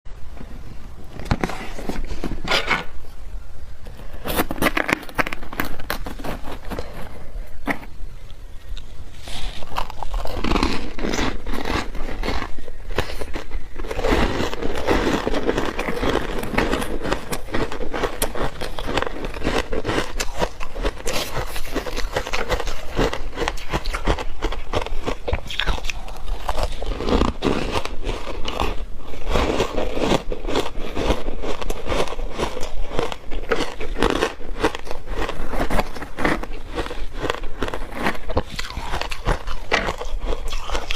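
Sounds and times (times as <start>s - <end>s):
ice crunching being chewed: 4.3s - 40.9s.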